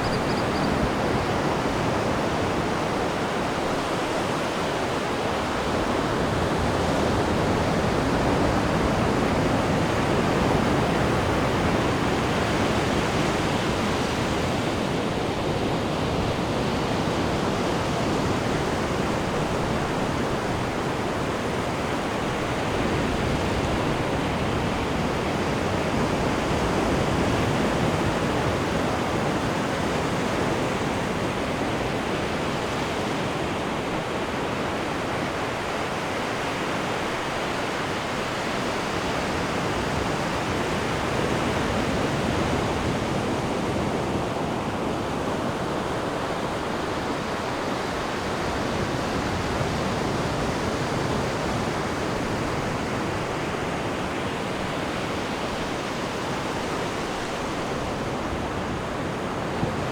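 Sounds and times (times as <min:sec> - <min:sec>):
ocean waves breaking on beach: 0:00.0 - 0:59.9.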